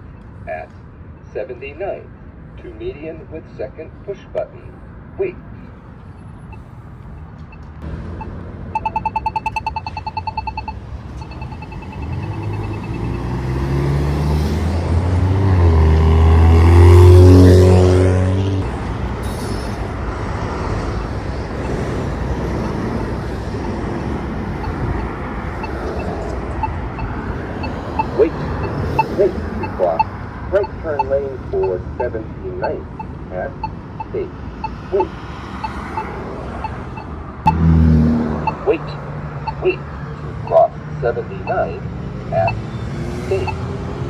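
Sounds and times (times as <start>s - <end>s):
traffic noise: 0.0s - 44.0s
pedestrian signal rapid ticking: 6.4s - 15.8s, 18.6s - 44.0s
heavy vehicle driving past: 10.4s - 32.1s, 34.9s - 38.6s.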